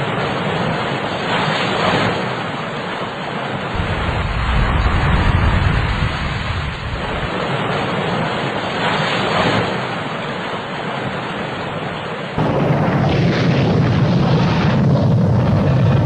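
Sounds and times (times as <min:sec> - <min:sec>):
rain: 0:00.0 - 0:16.0
sea: 0:00.0 - 0:16.0
wind: 0:00.0 - 0:16.0
deep rumble: 0:03.7 - 0:07.3, 0:12.4 - 0:16.0.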